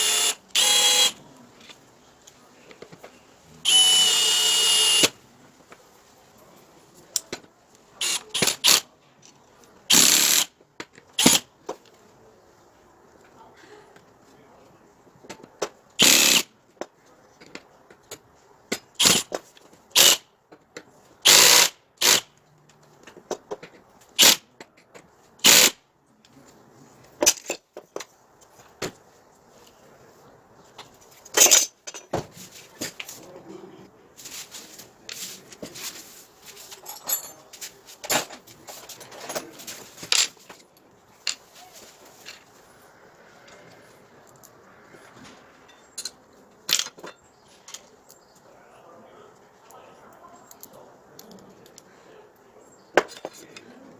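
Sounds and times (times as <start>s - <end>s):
short noisy tool bursts: 9.9s - 10.5s, 16.0s - 16.5s, 21.3s - 22.2s.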